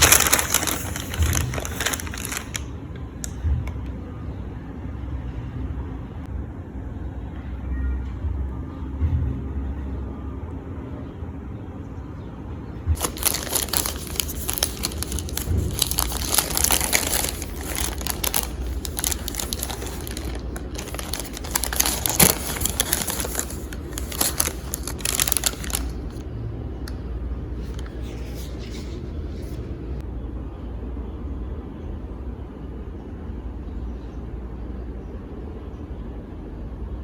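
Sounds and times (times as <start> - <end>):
crinkling and crumpling: 0.0 - 2.7, 13.0 - 26.2
low steady hum: 0.0 - 37.0.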